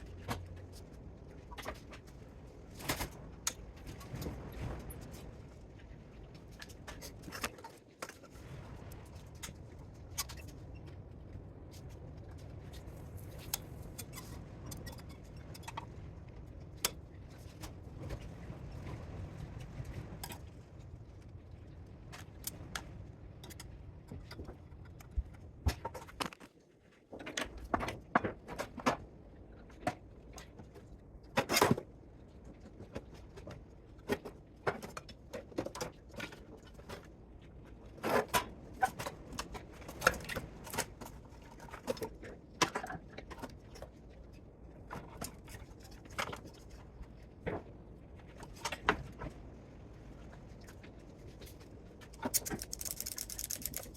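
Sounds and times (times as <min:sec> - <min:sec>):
metal parts clinking: 0:52.3 - 0:53.9.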